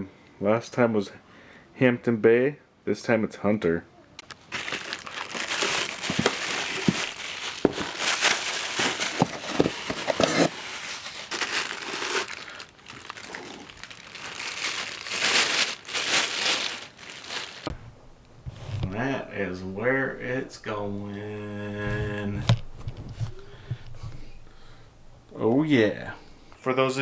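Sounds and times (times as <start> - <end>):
packaging crinkling: 4.2 - 26.6
sharp clicks and knocks: 21.9 - 25.4.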